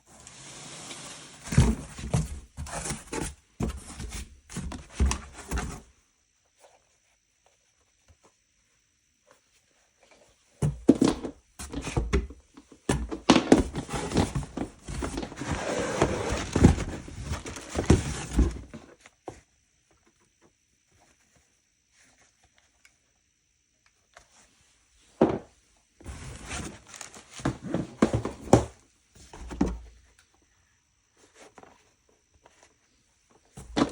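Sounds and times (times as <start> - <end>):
packaging rustling: 13.6 - 18.7.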